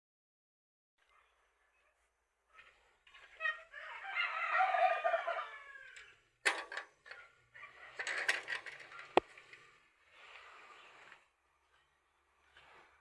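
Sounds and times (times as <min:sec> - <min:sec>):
chickens calling: 0:02.5 - 0:09.3
knocks and clattering: 0:06.5 - 0:07.2.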